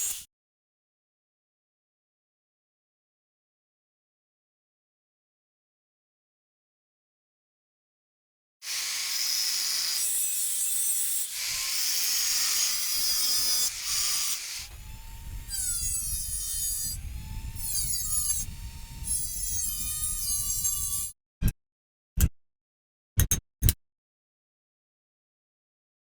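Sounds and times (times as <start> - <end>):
tool rasping against material: 0.0 - 0.2, 11.1 - 14.8.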